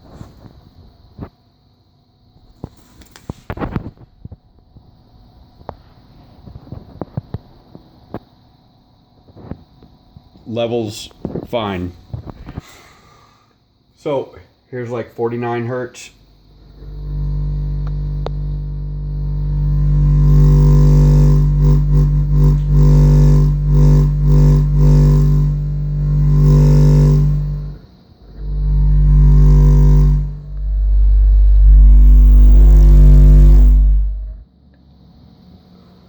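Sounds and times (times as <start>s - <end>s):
buzzing noise: 16.4s - 34.4s
low subwoofer test tone: 16.4s - 34.4s.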